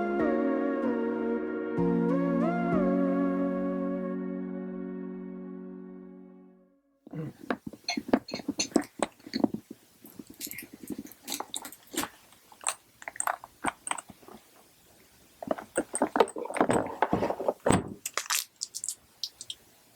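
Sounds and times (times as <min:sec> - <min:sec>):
objects clicking and tapping: 0:07.1 - 0:14.7, 0:15.4 - 0:19.6
rustling of handled objects: 0:07.1 - 0:19.7.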